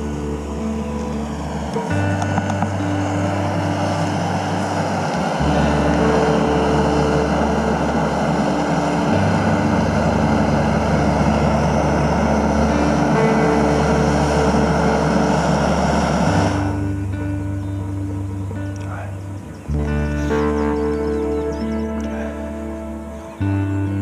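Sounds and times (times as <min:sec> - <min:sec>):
steady rushing noise: 0:00.0 - 0:23.8
music of low held chords: 0:00.0 - 0:24.0.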